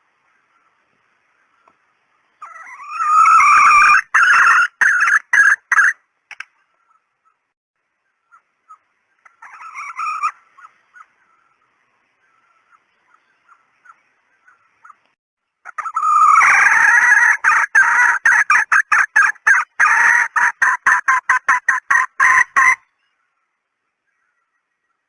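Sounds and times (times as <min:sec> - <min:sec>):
hen cackling: 0:02.4 - 0:06.0, 0:08.3 - 0:11.3, 0:15.6 - 0:22.9
hen clucking: 0:02.4 - 0:06.0, 0:08.3 - 0:11.6, 0:12.5 - 0:22.9.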